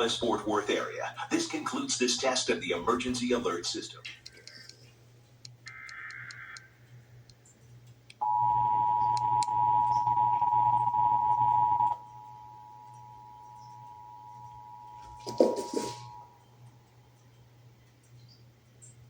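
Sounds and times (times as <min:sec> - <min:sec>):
two-tone attention signal: 0:08.2 - 0:16.4.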